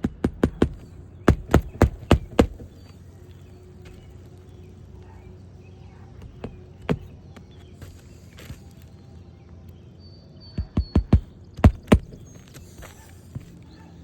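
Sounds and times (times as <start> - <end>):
hammer striking nails: 0.0 - 2.8, 10.6 - 12.9.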